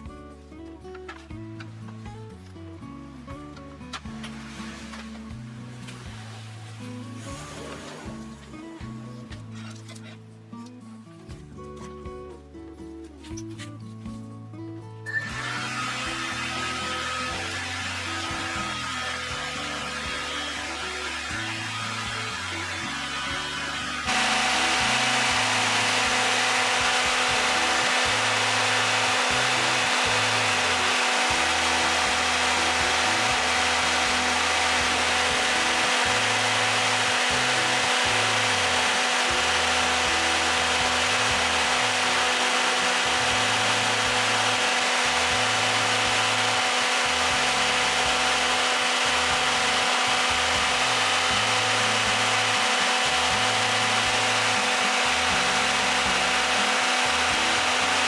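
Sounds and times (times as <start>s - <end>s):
radiator fan motor whirring: 15.1s - 58.0s.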